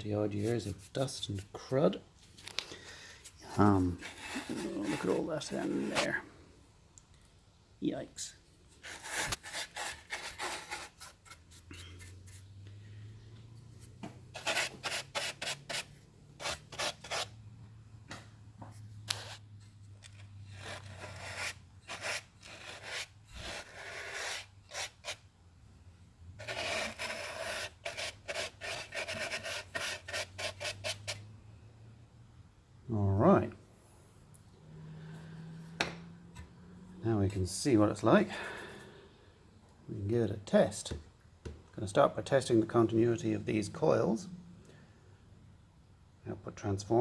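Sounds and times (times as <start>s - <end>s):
brush scrubbing loudspeaker: 3.4s - 6.2s.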